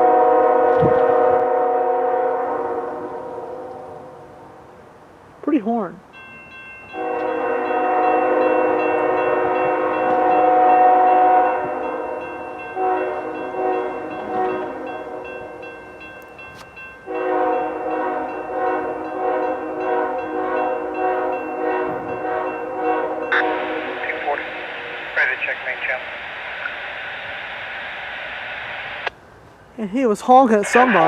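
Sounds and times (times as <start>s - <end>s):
locomotive air horn blasts: 0.0s - 4.4s, 6.9s - 15.6s, 17.1s - 24.6s.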